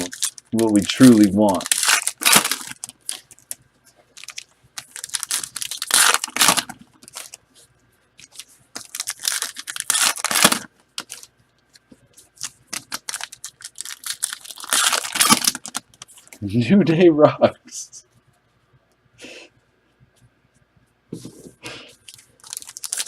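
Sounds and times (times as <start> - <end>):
packaging tearing and crinkling: 0.0 - 7.4, 8.2 - 11.3, 12.4 - 16.4, 22.0 - 23.0.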